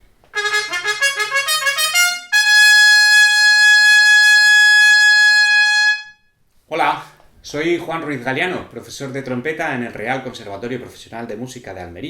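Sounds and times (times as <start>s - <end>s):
trumpet playing: 0.3s - 6.3s.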